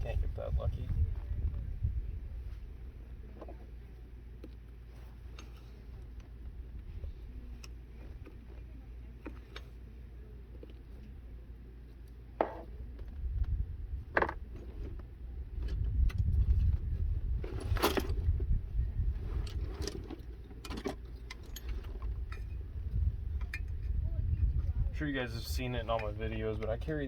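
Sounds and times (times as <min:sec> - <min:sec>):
low rumble: 0:00.0 - 0:03.3, 0:12.8 - 0:20.2, 0:21.4 - 0:27.0.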